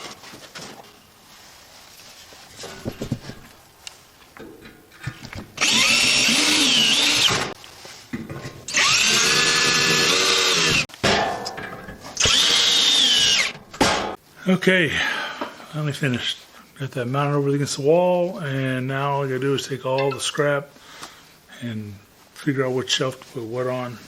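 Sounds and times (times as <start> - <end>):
power drill running: 5.6 - 7.6, 8.7 - 10.9, 12.2 - 13.6.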